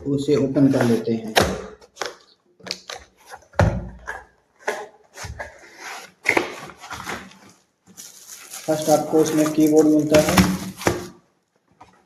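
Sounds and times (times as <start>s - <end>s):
packaging sliding and rustling: 4.6s - 11.2s.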